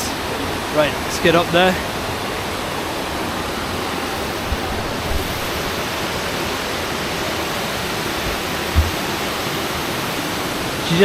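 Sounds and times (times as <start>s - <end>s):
waterfall roaring: 0.0s - 11.0s
soft low thumps: 8.1s - 9.2s.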